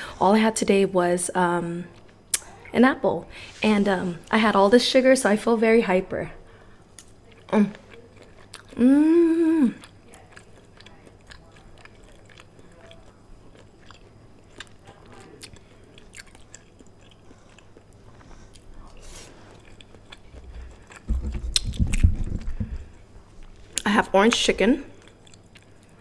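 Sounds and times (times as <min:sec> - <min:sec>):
chewing and biting food: 0:07.0 - 0:08.8, 0:09.7 - 0:23.9, 0:24.9 - 0:26.0
low rumbling sound: 0:20.3 - 0:23.3.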